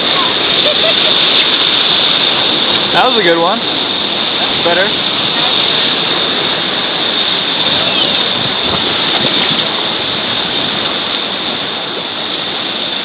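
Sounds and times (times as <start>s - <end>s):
river water rushing: 0.0s - 13.0s.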